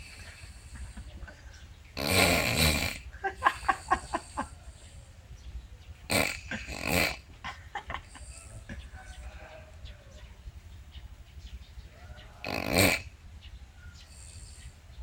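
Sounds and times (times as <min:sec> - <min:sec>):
person snoring loudly: 0:02.0 - 0:04.4, 0:06.1 - 0:07.3, 0:12.4 - 0:13.1
short snorts: 0:02.0 - 0:04.9, 0:06.1 - 0:07.4, 0:12.4 - 0:13.2.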